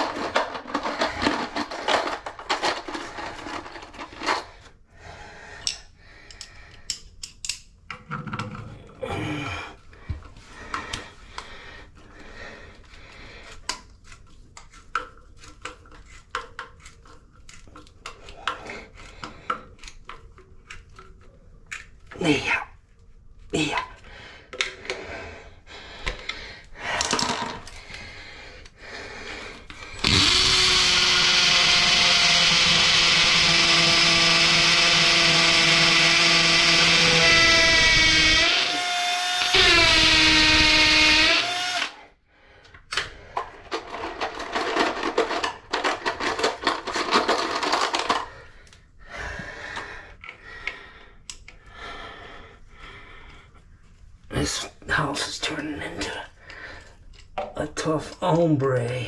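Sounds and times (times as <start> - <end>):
knocks and clatter on floor: 0.0 - 4.6, 7.9 - 8.9, 26.9 - 27.8, 43.3 - 48.3
power tool motor running: 30.0 - 42.0.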